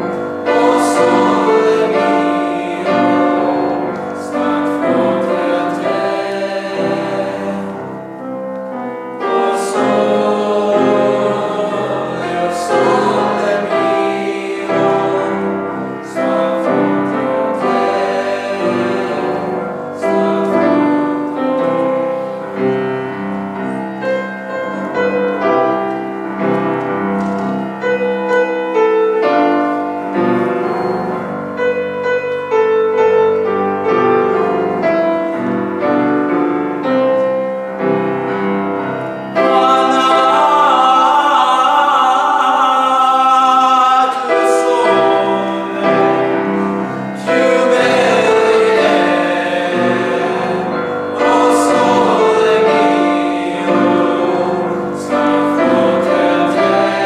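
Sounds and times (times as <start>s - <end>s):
choir singing: 0.0s - 57.0s
piano accompaniment: 0.0s - 57.0s.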